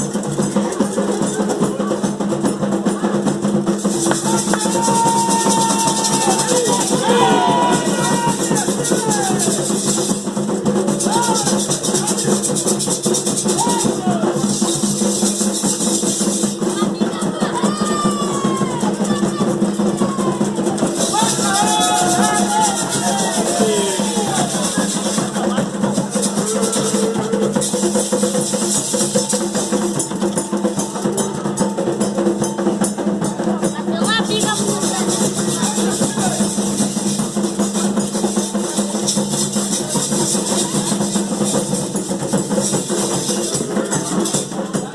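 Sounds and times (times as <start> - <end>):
rattle shaken fast: 0.0 - 31.6, 32.8 - 44.9
drums: 0.0 - 44.9
voices singing: 4.1 - 9.6, 16.8 - 27.6.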